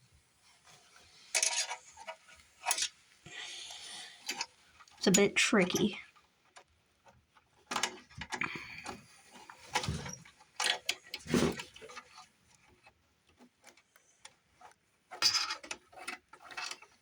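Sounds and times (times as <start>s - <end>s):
small clicks taps and scrapes: 0.6s - 17.0s
handling knocks and rustles: 4.2s - 17.0s.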